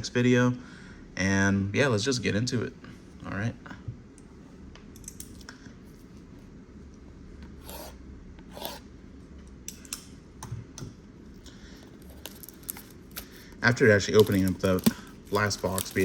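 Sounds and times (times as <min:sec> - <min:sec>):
packaging rubbing and clicking: 0:12.0 - 0:16.0.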